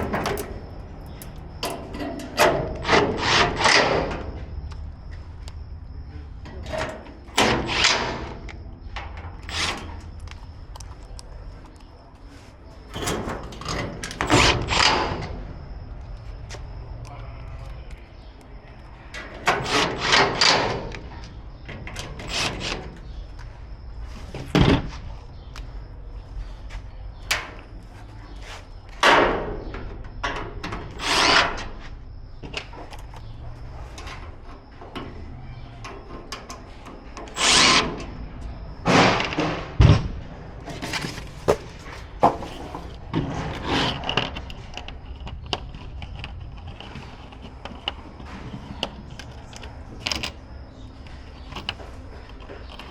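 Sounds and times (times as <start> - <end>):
parts and tools clattering: 0.0 - 5.2, 6.4 - 15.6, 32.4 - 52.9.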